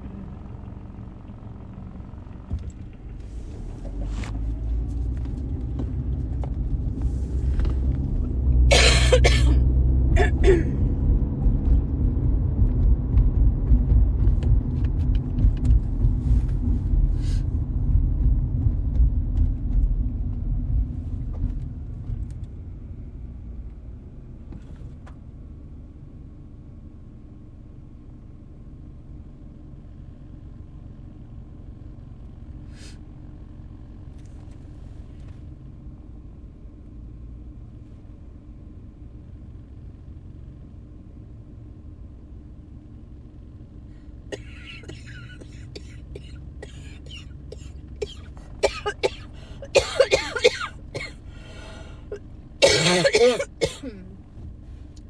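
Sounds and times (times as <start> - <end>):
car road and engine rumble: 0.0 - 55.0
person coughing: 8.7 - 9.6, 10.2 - 10.8, 44.3 - 51.2, 52.1 - 54.1.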